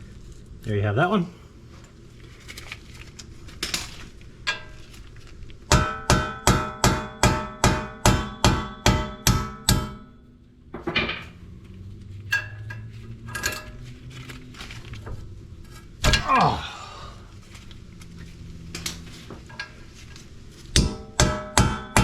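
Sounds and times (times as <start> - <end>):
tools clanking: 3.6 - 5.1, 8.6 - 16.7, 18.1 - 22.0
hammer striking metal: 5.7 - 11.4, 20.8 - 22.0.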